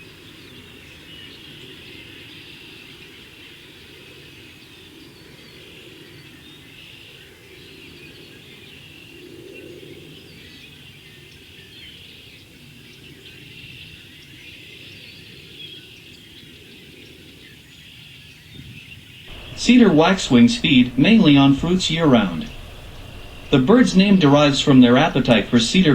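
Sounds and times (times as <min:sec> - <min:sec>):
flock of birds chirping: 0:19.3 - 0:25.9
low steady rumble: 0:19.3 - 0:25.9.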